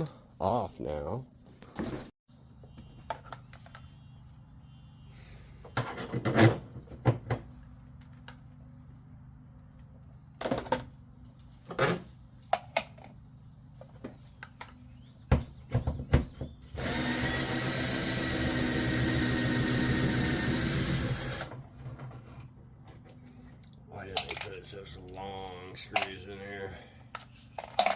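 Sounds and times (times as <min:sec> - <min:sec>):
power drill running: 0:16.8 - 0:21.6.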